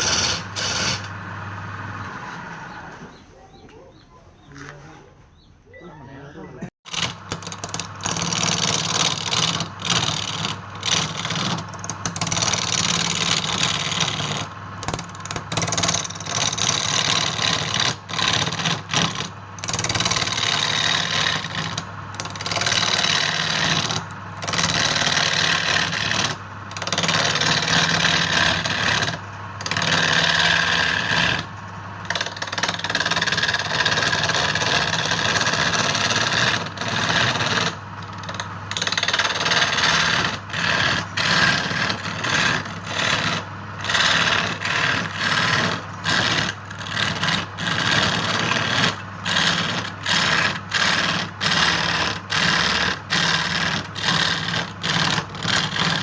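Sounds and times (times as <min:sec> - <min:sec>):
turning tool cutting wood: 0:00.0 - 0:01.2, 0:06.8 - 0:56.0
lathe motor hum: 0:15.9 - 0:56.0.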